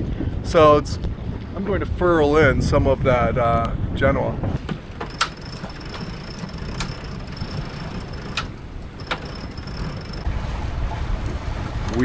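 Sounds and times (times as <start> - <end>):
rigging clicks: 4.6 - 10.3
faint high whine: 5.0 - 10.3
wind and water rushing: 10.2 - 12.0.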